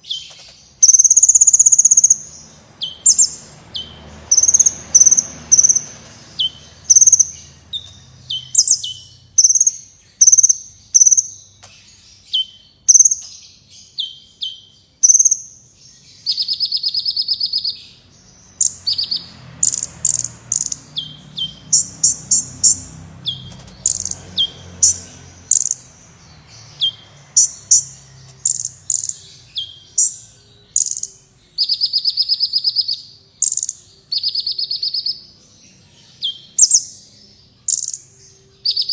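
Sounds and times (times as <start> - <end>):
buzzy bird trills: 0.0 - 13.3, 18.6 - 25.9, 26.5 - 35.3
bird chirping: 0.0 - 38.9.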